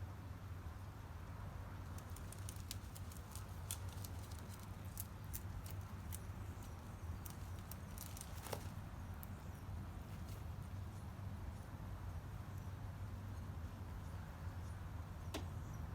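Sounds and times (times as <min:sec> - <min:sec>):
rabbit chewing leaves: 0:01.7 - 0:11.1.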